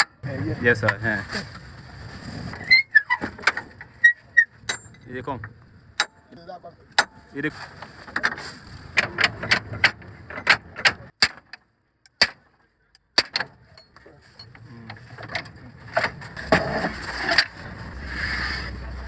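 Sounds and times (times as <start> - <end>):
tools clicking on metal: 11.2 - 14.6.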